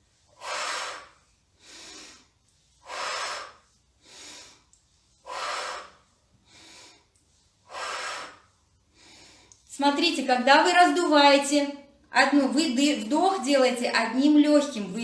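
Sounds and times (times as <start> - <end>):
woman breathing deeply: 0.1 - 9.7.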